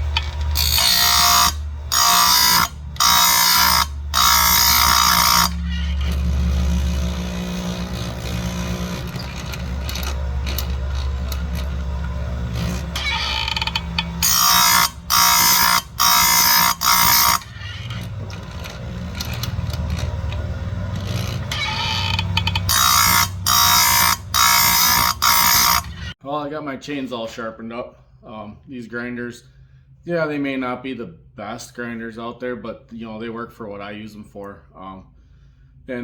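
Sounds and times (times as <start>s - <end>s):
grinder motor hum: 0.0s - 26.2s
grinding wheel on cutter teeth: 0.0s - 26.2s.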